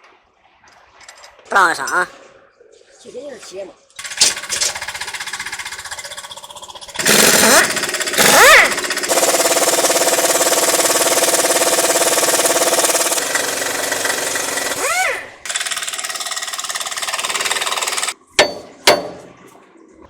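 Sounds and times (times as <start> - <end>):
engine running with knocking rattle: 4.0 - 19.2.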